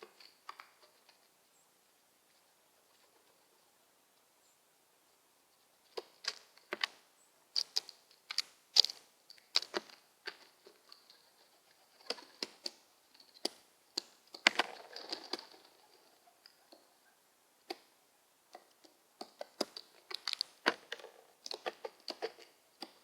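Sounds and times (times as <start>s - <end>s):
bird scrabbling: 9.6s - 13.5s.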